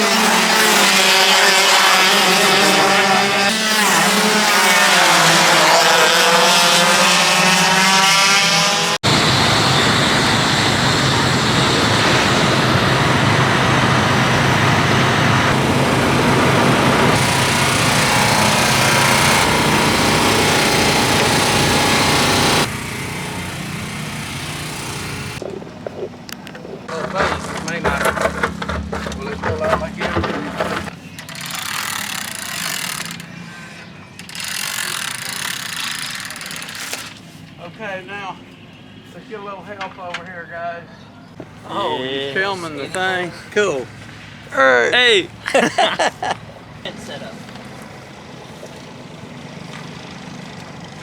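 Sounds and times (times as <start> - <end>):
racing kart engines revving: 0.0 - 25.4, 26.8 - 33.5.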